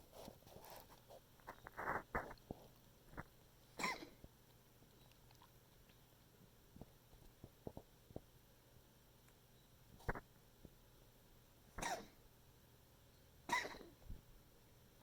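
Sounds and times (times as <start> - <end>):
pet coughing: 3.8 - 4.2, 11.8 - 12.2, 13.5 - 14.0.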